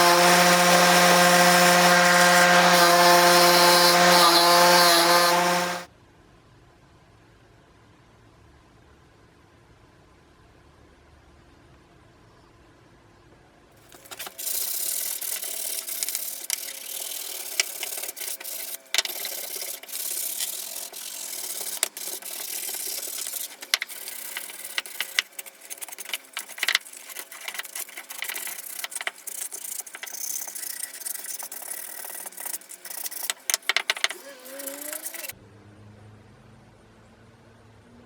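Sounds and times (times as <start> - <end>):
scratchy rubbing on saw blade: 0.0 - 5.9, 13.9 - 35.4.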